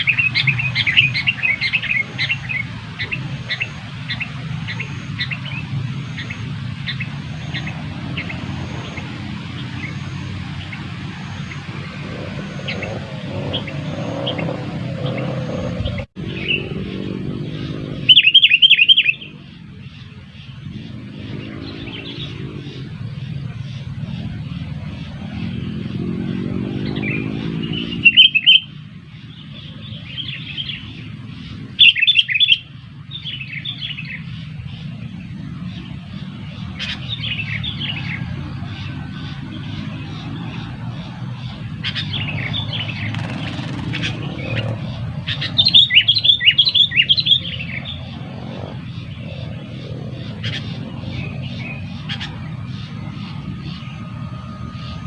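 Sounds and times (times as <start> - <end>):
birds chirping: 0.0 - 55.0.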